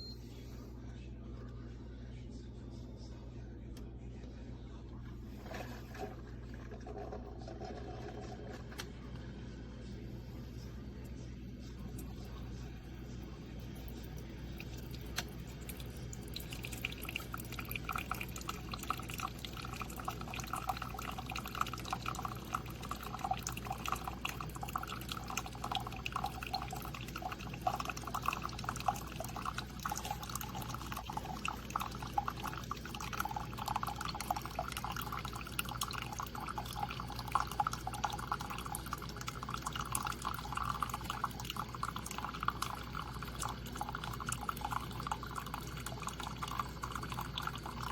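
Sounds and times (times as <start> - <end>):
water pouring and dripping: 13.7 - 47.9.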